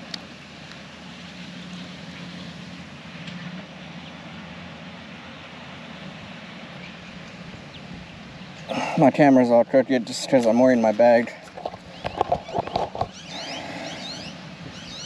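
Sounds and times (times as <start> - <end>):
distant engine hum: 0.0 - 15.0
outdoor background noise: 0.0 - 15.0.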